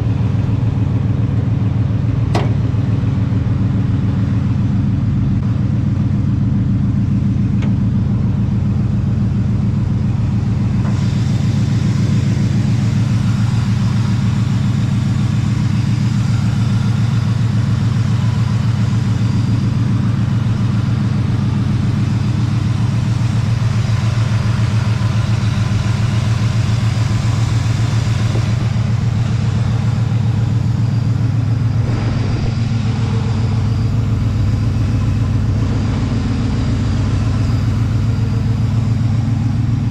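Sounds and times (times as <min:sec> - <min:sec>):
car engine running: 0:00.0 - 0:39.9.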